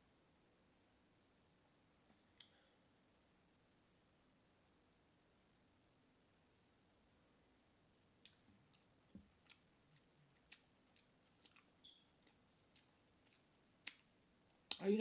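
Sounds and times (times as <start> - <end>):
chewing mouth smacks: 8.2 - 14.8.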